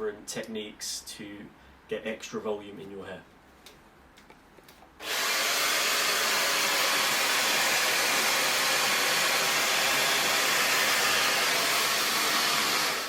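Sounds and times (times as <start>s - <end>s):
hair dryer running: 5.0s - 13.0s.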